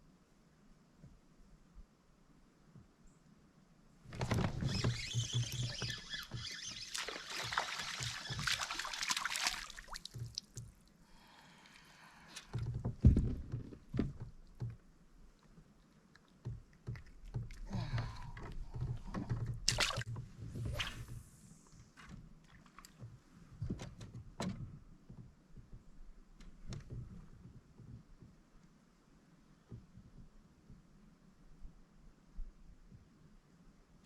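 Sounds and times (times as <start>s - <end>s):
water splashing and dripping: 4.7s - 10.9s, 16.1s - 21.2s.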